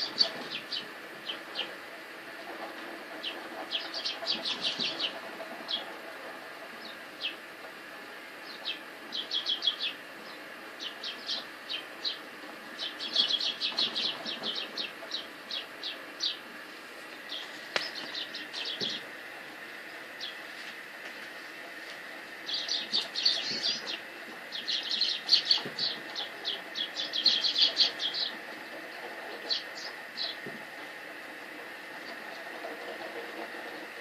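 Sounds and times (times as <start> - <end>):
small birds chirping: 0.0 - 1.8, 3.2 - 5.9, 8.4 - 16.5, 17.1 - 19.1, 19.8 - 20.5, 22.4 - 30.5.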